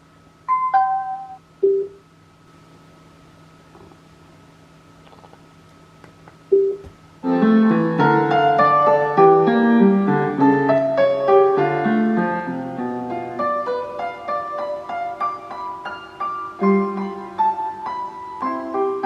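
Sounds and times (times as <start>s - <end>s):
solo piano classical piece: 7.2s - 19.0s.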